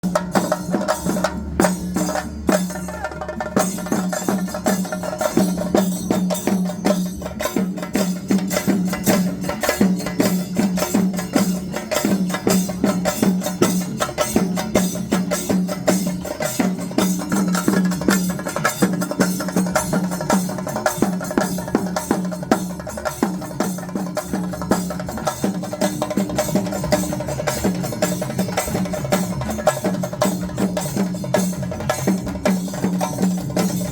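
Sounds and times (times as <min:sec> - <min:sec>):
fast sharp drum strokes: 0:00.0 - 0:33.9.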